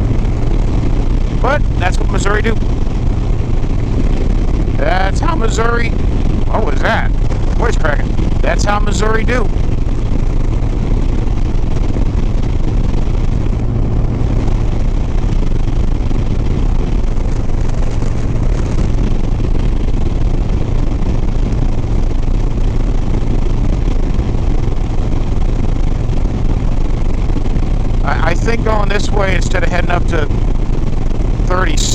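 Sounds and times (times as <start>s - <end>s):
wind and road noise: 0.0s - 31.9s.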